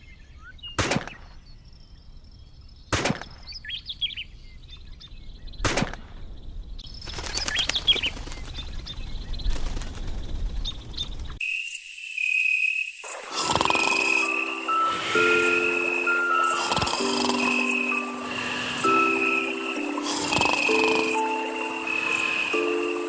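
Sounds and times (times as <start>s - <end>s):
small birds chirping: 0.0s - 23.0s
steady high-pitched tone: 11.4s - 23.0s
chime-like music: 13.0s - 23.0s.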